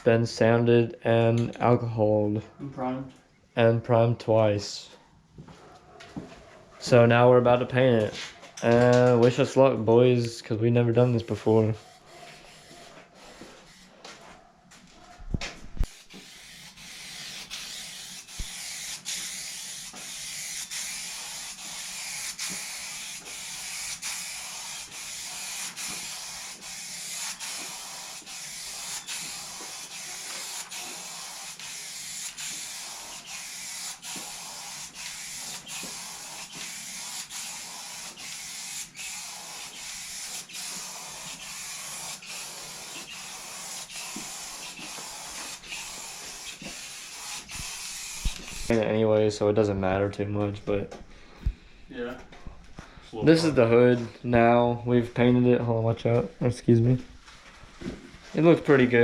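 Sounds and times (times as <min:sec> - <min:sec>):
spray paint hissing: 0:11.8 - 0:14.0, 0:15.8 - 0:48.7.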